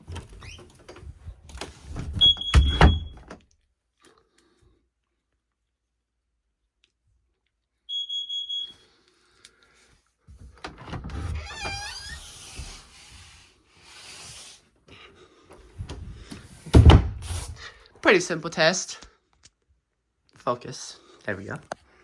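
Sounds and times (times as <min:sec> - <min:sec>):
smoke alarm beep: 0:02.2 - 0:03.2, 0:07.9 - 0:08.8.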